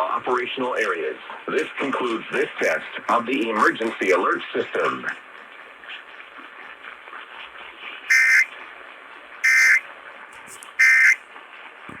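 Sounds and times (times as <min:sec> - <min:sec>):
faint radio hiss: 0:07.6 - 0:08.5, 0:09.4 - 0:09.8, 0:10.4 - 0:11.2.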